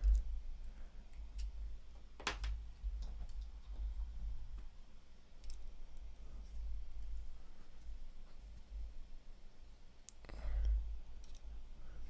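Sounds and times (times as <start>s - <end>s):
small parts clicking and tapping: 0.0s - 0.4s, 1.1s - 3.8s, 5.4s - 5.8s, 10.0s - 11.5s.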